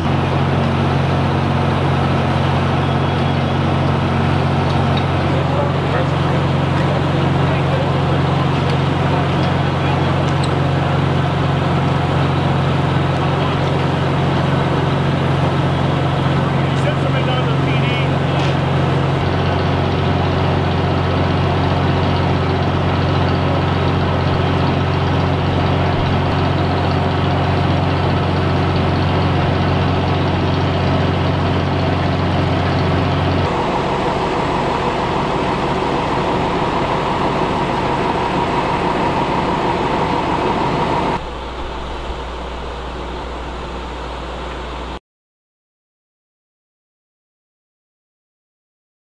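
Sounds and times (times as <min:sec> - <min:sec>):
large vehicle engine idling: 0:00.0 - 0:45.0
higher steady tone: 0:31.6 - 0:44.2.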